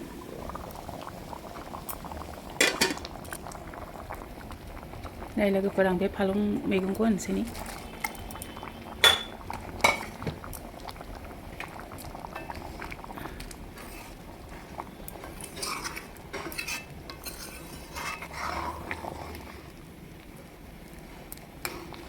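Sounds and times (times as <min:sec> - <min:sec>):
curry simmering: 0:00.0 - 0:22.0
metal utensil scraping a pot: 0:13.8 - 0:14.2, 0:15.2 - 0:19.4.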